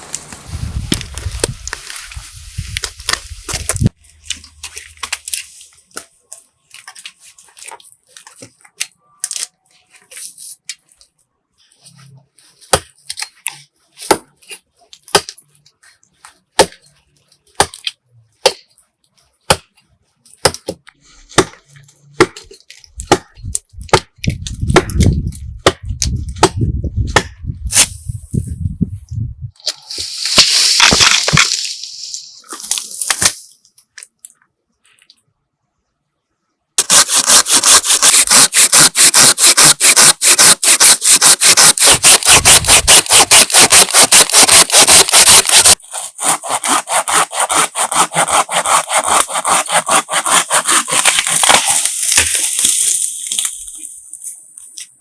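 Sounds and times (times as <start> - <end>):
wood being chopped: 12.7 - 12.9, 14.0 - 14.3, 15.1 - 15.4, 16.6 - 16.8, 17.6 - 18.7, 19.5 - 19.7, 20.4 - 21.6, 22.2 - 27.9, 36.8 - 53.7.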